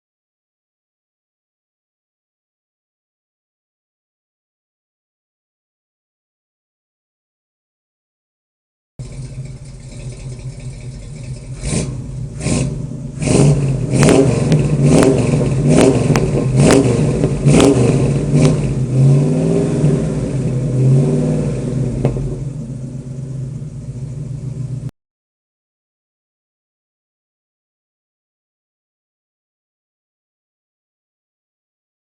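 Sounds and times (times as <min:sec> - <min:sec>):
misfiring car engine revving: 0:09.0 - 0:24.9.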